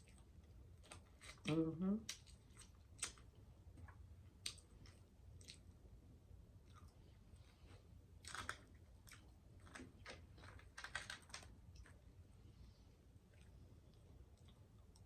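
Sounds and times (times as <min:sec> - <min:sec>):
chewing crunchy fish: 0:00.0 - 0:05.9, 0:06.6 - 0:12.2.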